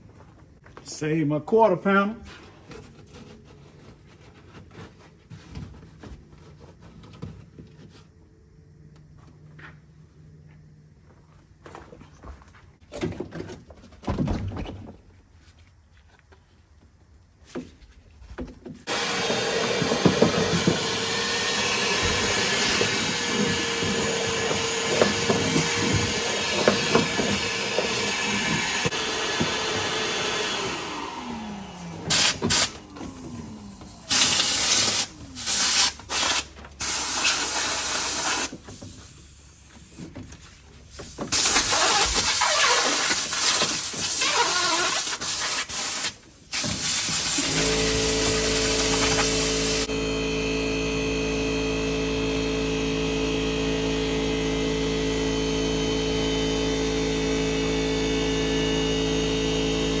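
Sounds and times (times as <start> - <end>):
motor humming: 18.9 - 35.7, 47.2 - 60.0
compressed air hissing blasts: 32.0 - 32.8, 33.9 - 40.0, 41.3 - 49.9.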